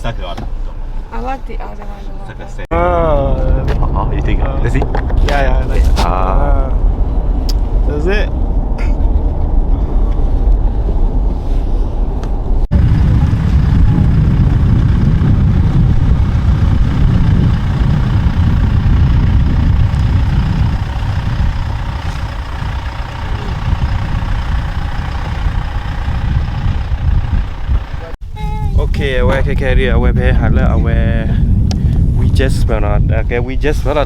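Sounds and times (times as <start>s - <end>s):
car interior road and engine noise: 0.0s - 28.3s.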